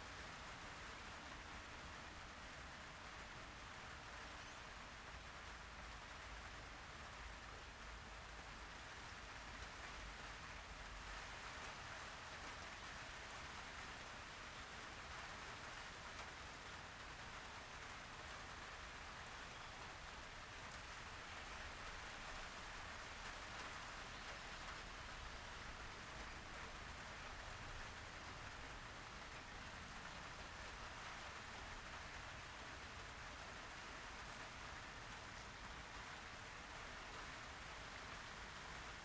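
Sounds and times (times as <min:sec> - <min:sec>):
faint steady hiss: 0:00.0 - 0:39.0.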